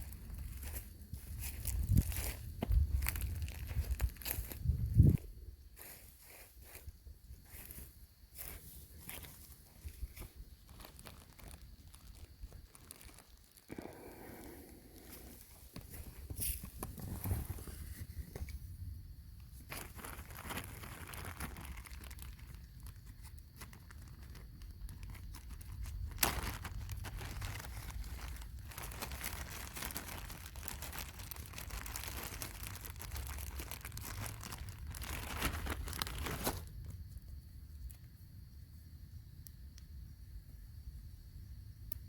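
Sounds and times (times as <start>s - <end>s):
plastic packaging crinkling: 0.0s - 4.8s, 8.5s - 17.9s, 19.6s - 36.9s.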